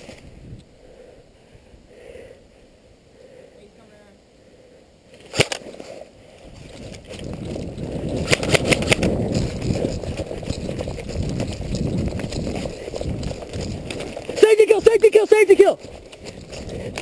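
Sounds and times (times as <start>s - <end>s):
sharp clicks: 5.2s - 5.8s, 7.8s - 10.8s
clothing and gear rustling: 5.2s - 17.0s
quick footsteps: 5.4s - 17.0s.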